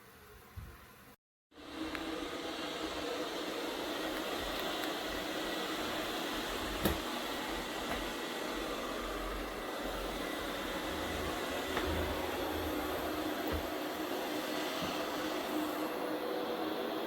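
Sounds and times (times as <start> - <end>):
robot vacuum cleaner whirring: 1.6 - 17.0.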